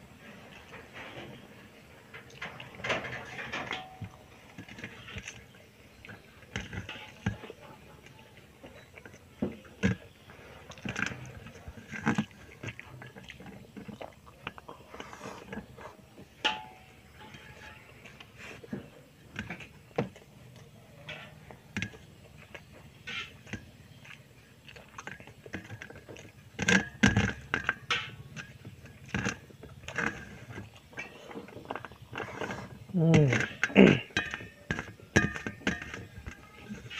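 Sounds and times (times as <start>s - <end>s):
person chewing and smacking: 9.8s - 15.8s, 23.4s - 26.9s.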